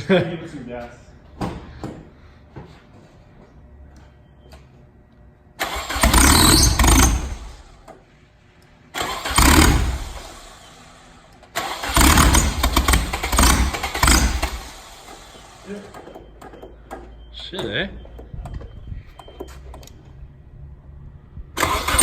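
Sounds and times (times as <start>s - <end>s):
turbocharged engine firing up: 5.6s - 7.8s, 8.9s - 15.9s, 21.5s - 22.0s.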